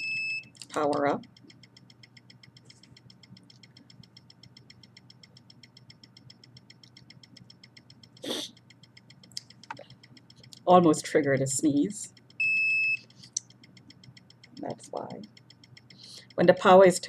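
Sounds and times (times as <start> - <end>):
faint rapid ticking: 0.2 - 17.0
sharp nose sniff: 8.2 - 8.6.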